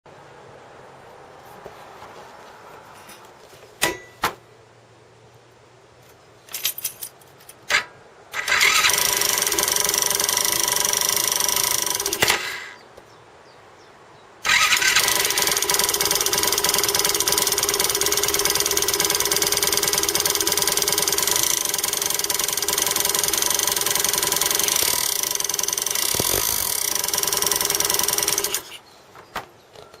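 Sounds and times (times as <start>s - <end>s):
starter clicks: 7.7s - 12.8s, 14.4s - 28.8s.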